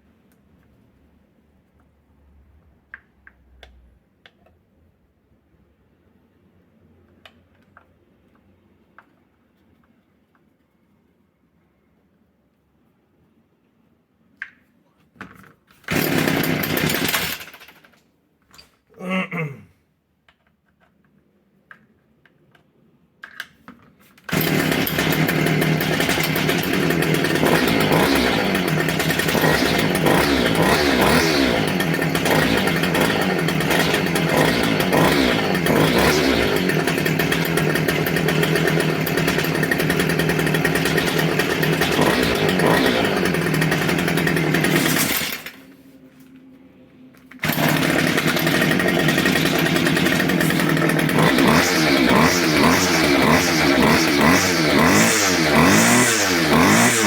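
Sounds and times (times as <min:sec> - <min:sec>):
trimmer engine revving: 0:15.9 - 0:17.8, 0:24.3 - 0:45.6, 0:47.4 - 0:57.0
trimmer engine sputtering: 0:15.9 - 0:17.9, 0:24.3 - 0:45.6, 0:47.4 - 0:57.0.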